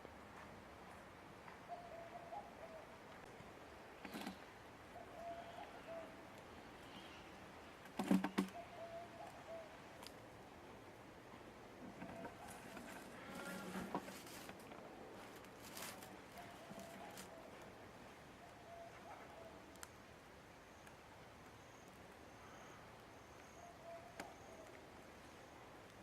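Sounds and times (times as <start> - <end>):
dove cooing: 1.7 - 3.0, 4.1 - 6.3, 8.3 - 9.9, 11.9 - 14.3, 15.7 - 17.8, 18.4 - 19.7, 23.5 - 24.9.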